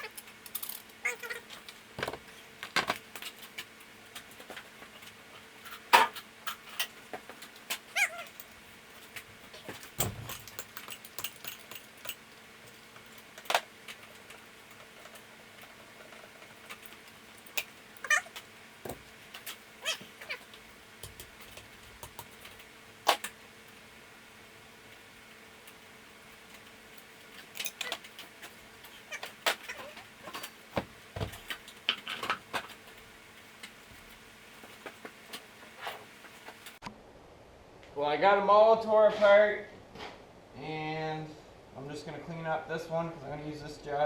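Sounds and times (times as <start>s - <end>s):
tools and metal parts clinking: 0.0s - 23.3s, 27.3s - 30.6s.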